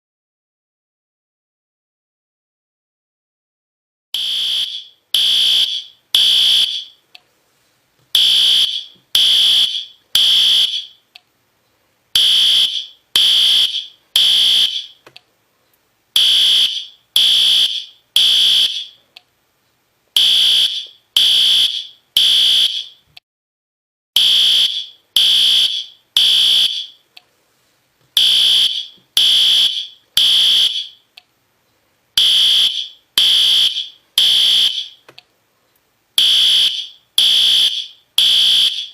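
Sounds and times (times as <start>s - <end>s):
fire alarm beeps: 4.2s - 7.0s, 8.2s - 11.0s, 12.2s - 15.0s, 16.2s - 19.0s, 20.2s - 23.0s, 24.2s - 27.0s, 28.2s - 31.0s, 32.2s - 35.0s, 36.2s - 38.9s.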